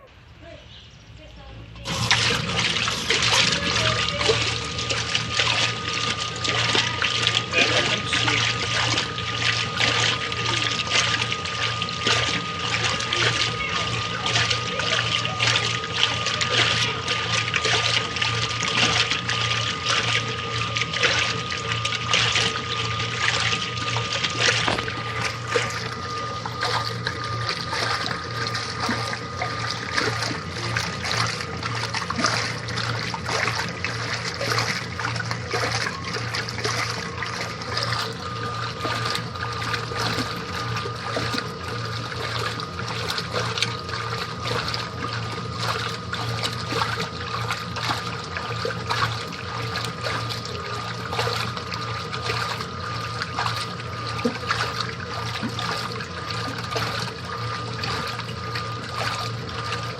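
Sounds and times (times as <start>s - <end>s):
washing machine motor hum: 0.0s - 59.9s
water splashing and trickling: 1.2s - 59.9s
thin high whine: 1.4s - 32.6s.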